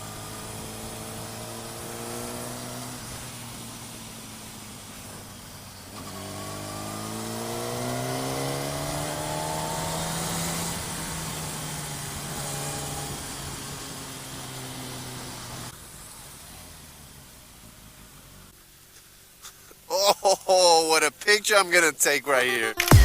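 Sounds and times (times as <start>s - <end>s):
vehicle engine speeding up: 0.0s - 4.5s, 5.9s - 15.7s.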